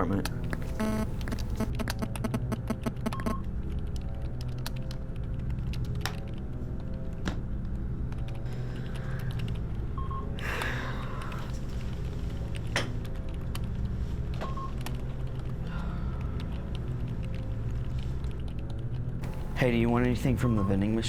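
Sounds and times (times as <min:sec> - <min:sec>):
steady low hum: 0:00.2 - 0:04.2, 0:19.2 - 0:21.0.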